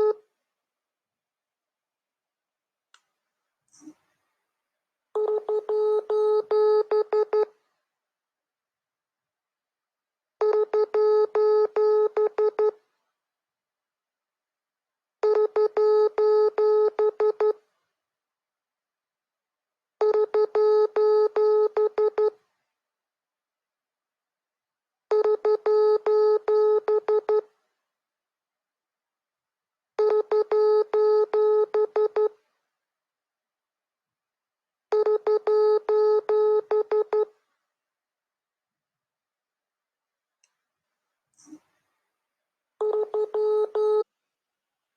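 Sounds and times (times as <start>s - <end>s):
morse code beeps: 30.0s - 32.3s, 34.9s - 37.3s, 42.8s - 44.0s
morse code beeping: 42.8s - 44.0s.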